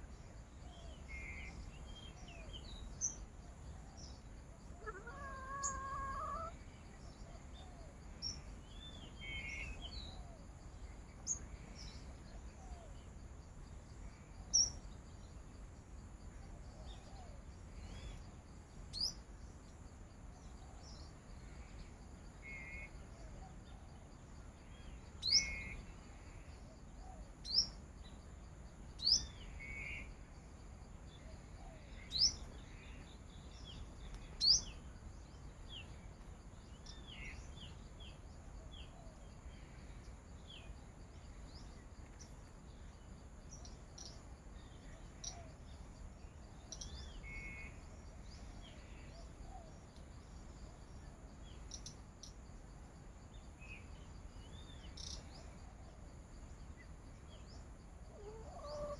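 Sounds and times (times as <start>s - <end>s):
small birds chirping: 0.0s - 10.2s, 16.5s - 21.9s, 28.8s - 30.2s, 31.1s - 52.4s, 56.6s - 58.9s
lower bird calls: 4.0s - 6.6s, 58.1s - 58.9s.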